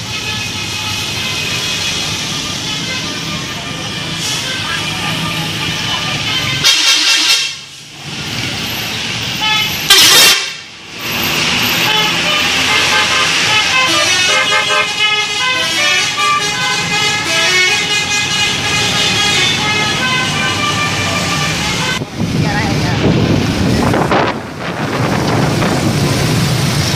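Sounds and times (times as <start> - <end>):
bus horn playing a tune: 0.0 - 7.7, 9.4 - 10.7, 11.6 - 22.0.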